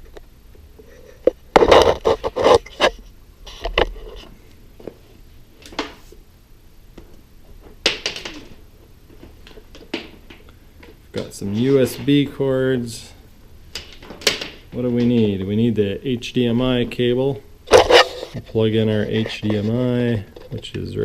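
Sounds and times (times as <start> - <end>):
cables and plugs being handled: 0.9 - 6.1, 16.8 - 20.9.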